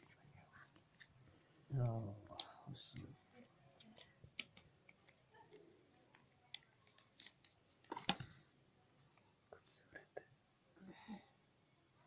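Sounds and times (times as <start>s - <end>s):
small objects clicking and tapping: 3.8s - 8.4s.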